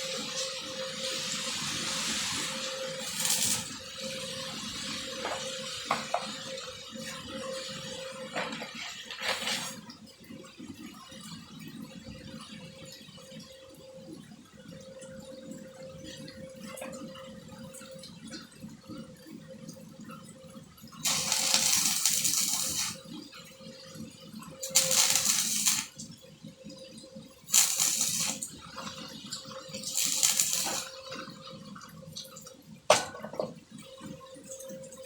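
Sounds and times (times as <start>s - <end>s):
welding arc crackling and hissing: 0.0s - 9.9s, 21.0s - 23.5s, 24.5s - 26.1s, 27.4s - 31.4s.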